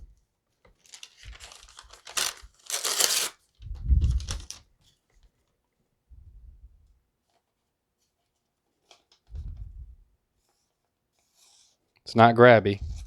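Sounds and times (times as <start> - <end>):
paper rustling: 0.6 - 3.4, 4.0 - 5.0
knife cutting paper: 0.9 - 3.4.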